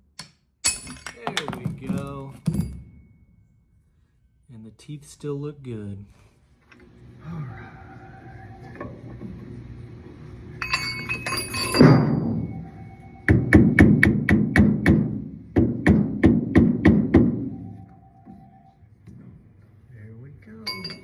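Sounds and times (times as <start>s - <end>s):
metal clattering: 0.1s - 3.4s, 20.7s - 21.0s.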